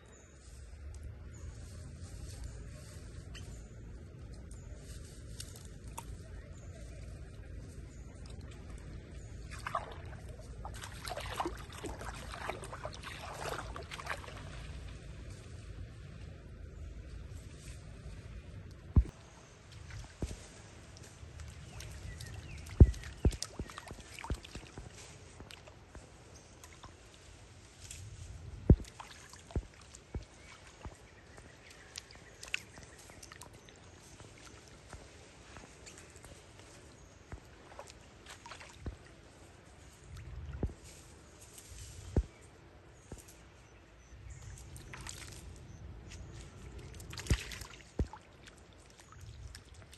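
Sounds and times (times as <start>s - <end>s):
steady low rumble: 0.0s - 33.0s
water splashing and sloshing: 4.5s - 49.9s.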